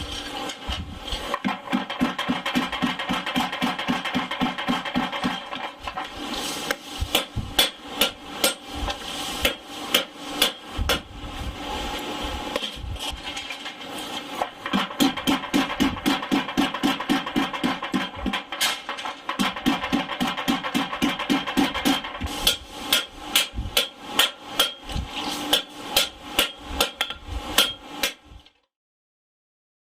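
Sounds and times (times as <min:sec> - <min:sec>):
hammer striking steel on anvil: 0:07.1 - 0:11.1, 0:14.6 - 0:28.3.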